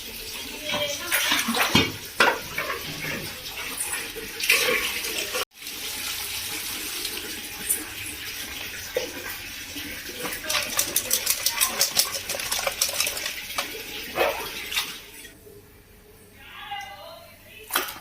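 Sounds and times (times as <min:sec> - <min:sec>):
tap water running into sink: 0:00.0 - 0:15.3
knocks and splashes: 0:00.7 - 0:03.5, 0:10.2 - 0:15.0.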